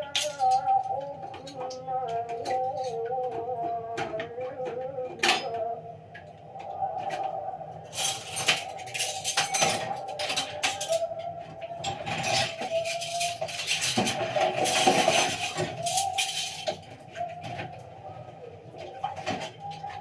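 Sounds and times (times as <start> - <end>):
dishes clinking in dishwasher: 0.0 - 5.7, 7.9 - 17.8.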